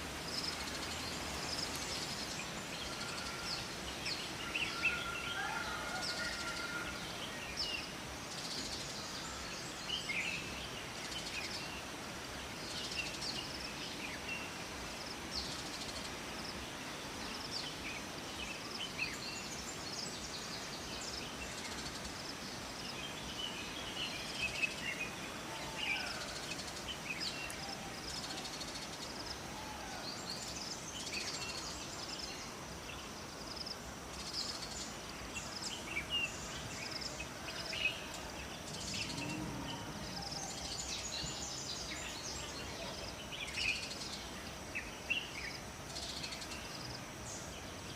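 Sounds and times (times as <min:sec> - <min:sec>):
water rushing: 0:00.0 - 0:30.9
small birds chirping and trilling: 0:00.0 - 0:47.9.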